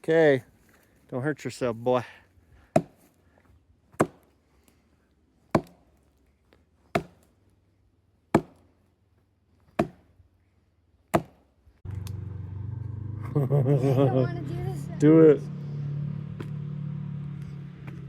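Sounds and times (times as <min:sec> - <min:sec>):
axe chopping wood: 0:02.7 - 0:03.1, 0:03.9 - 0:04.3, 0:05.5 - 0:06.0, 0:06.9 - 0:07.4, 0:08.3 - 0:08.7, 0:09.6 - 0:10.2, 0:11.1 - 0:11.5.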